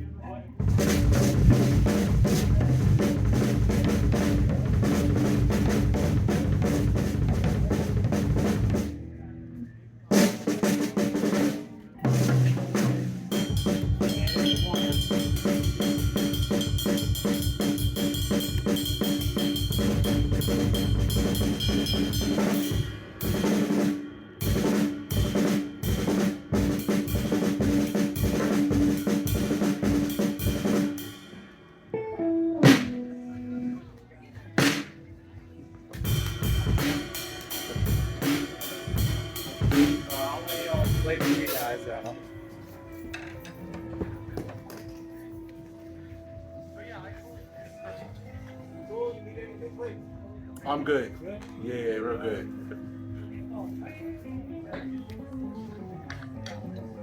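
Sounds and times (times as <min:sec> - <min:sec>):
drum kit playing: 0:00.6 - 0:09.1, 0:10.1 - 0:33.8, 0:34.6 - 0:35.1, 0:35.9 - 0:45.1.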